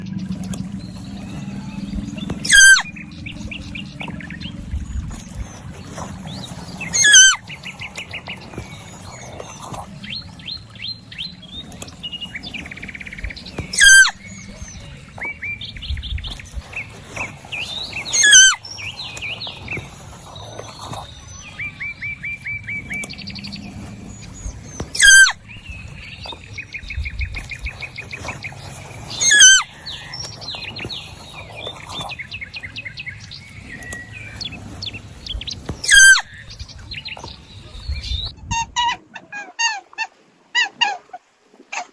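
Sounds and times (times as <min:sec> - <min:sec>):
birds chirping and trilling: 0:00.0 - 0:41.9.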